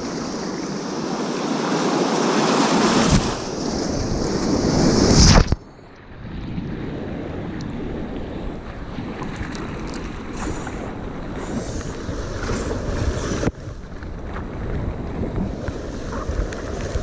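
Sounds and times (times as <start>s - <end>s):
river water rushing: 0.0s - 3.7s
wind buffeting microphone: 2.7s - 17.0s.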